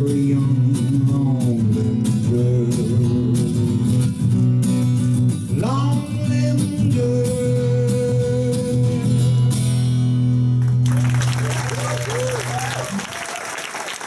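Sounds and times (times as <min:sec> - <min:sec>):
person singing wordlessly: 0:00.0 - 0:04.0, 0:05.5 - 0:09.1
strummed guitar chords: 0:00.0 - 0:10.8.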